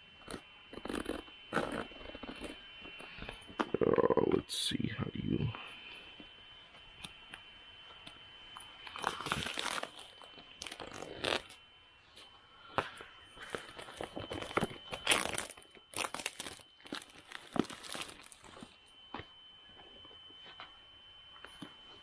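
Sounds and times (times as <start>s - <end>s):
faint steady high tone: 0.0s - 22.0s
packaging crinkling and tearing: 8.8s - 11.6s, 13.4s - 18.8s.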